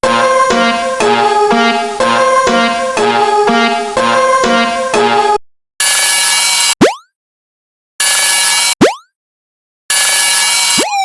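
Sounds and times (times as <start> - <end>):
electronic keyboard music: 0.0 - 5.4.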